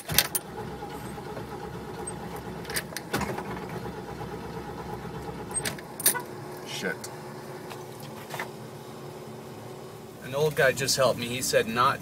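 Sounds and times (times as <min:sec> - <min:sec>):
starter motor cranking engine: 0:00.0 - 0:09.4.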